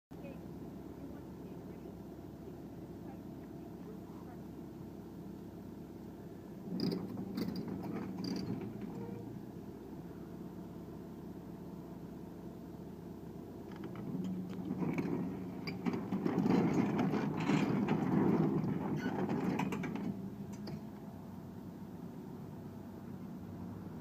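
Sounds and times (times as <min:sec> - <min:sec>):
excavator diesel engine running: 0:00.1 - 0:24.0
clicks and clanks: 0:06.7 - 0:09.3, 0:13.7 - 0:20.9.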